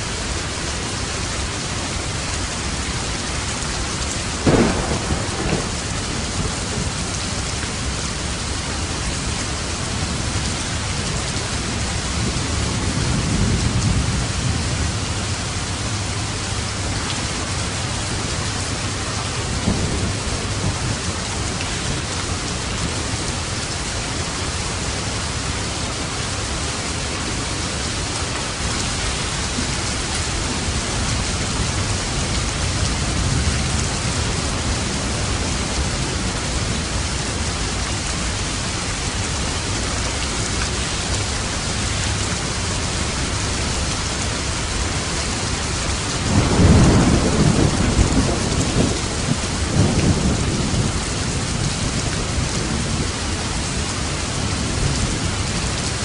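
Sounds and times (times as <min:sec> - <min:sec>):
heavy rain on a roof: 0:00.0 - 0:56.0
thunder rumbling: 0:04.4 - 0:10.9, 0:46.2 - 0:53.4.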